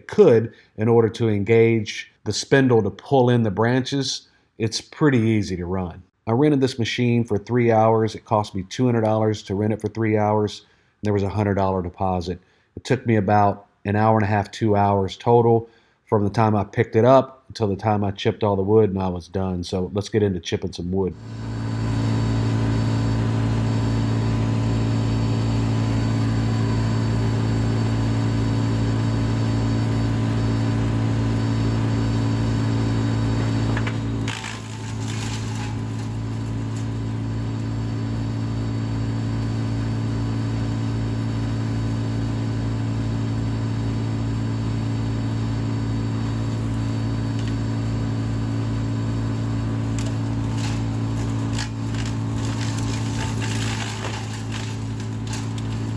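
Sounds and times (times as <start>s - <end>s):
wood chipper engine drone: 21.1s - 55.9s
short sharp cracks: 33.9s - 36.9s, 49.9s - 55.9s.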